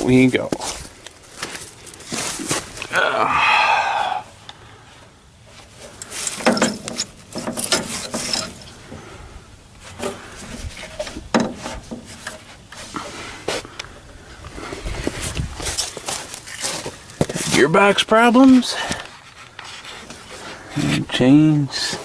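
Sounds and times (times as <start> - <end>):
knocks clicks and scrapes of hands working: 6.0 - 8.6.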